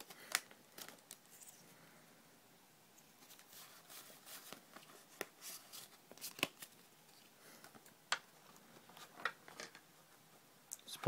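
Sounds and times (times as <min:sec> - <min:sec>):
trading cards rustling: 0:00.0 - 0:01.7, 0:03.0 - 0:09.8
cards snapping: 0:06.2 - 0:06.7.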